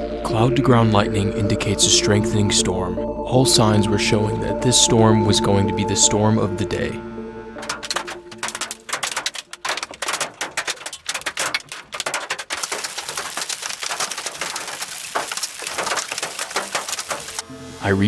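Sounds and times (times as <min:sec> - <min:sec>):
rain pelting car roof: 0:07.5 - 0:18.0.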